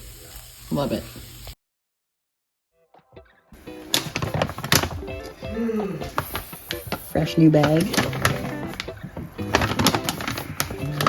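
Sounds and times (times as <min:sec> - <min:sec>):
background music: 0:02.8 - 0:11.0.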